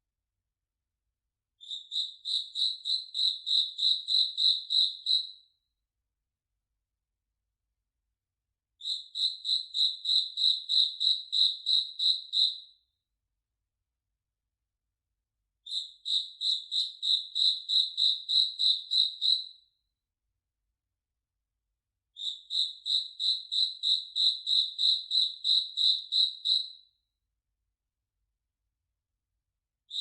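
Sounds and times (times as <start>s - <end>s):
cricket chirping: 1.6s - 5.2s.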